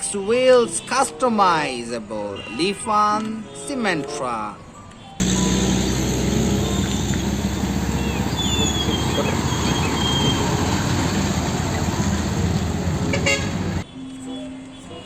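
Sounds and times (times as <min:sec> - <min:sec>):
heavy vehicle engine rumbling: 0:05.2 - 0:13.8
bird chirps: 0:06.4 - 0:10.8.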